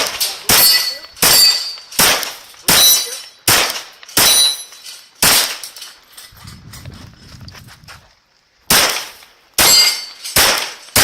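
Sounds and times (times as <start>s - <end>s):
pistol shots: 0.0s - 5.7s, 8.7s - 11.0s
steel plates ringing: 0.2s - 2.0s, 2.7s - 3.5s, 4.2s - 6.3s, 9.6s - 10.4s.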